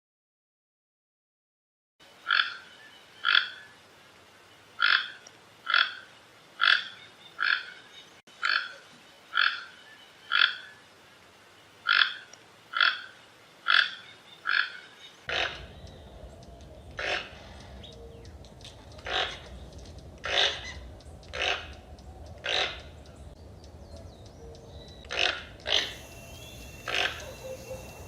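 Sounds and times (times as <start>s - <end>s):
toucan calling: 13.7s - 28.0s.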